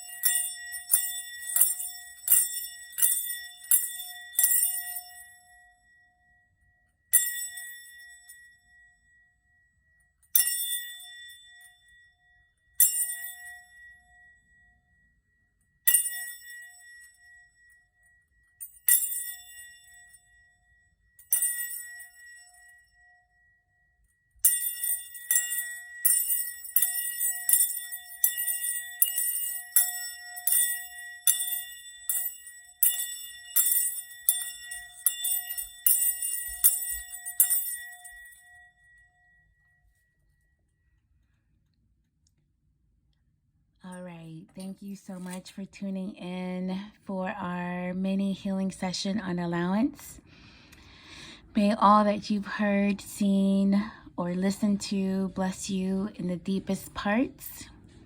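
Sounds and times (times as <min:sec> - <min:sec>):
small high-pitched bell ringing: 0:00.0 - 0:23.6, 0:24.4 - 0:40.5.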